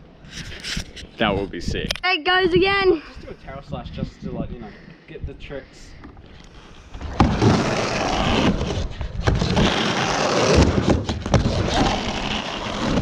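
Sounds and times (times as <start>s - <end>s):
skateboard wheels rumbling on wood: 6.9s - 13.0s
skateboard knocking on coping: 7.0s - 13.0s.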